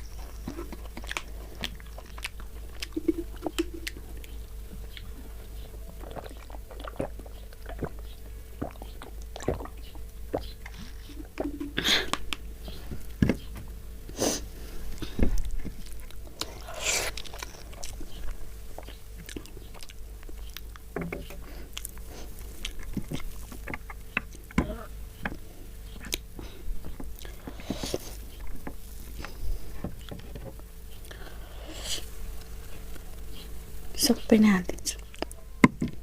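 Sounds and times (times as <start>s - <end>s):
chewing and mouth smacks: 0.0s - 12.5s, 15.0s - 24.6s, 25.2s - 30.2s, 35.0s - 35.4s.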